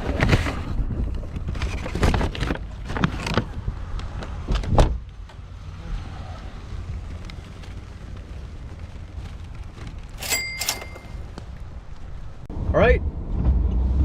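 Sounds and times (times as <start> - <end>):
car low rumble: 0.0 - 14.0
car knocks and clunks: 1.4 - 5.5.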